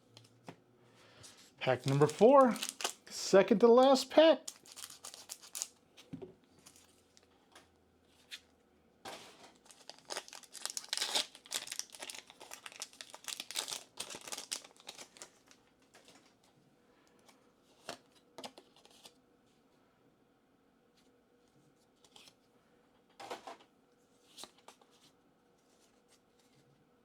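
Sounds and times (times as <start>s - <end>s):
foil wrapper crinkling: 1.6s - 3.2s, 4.4s - 5.8s, 9.5s - 15.6s.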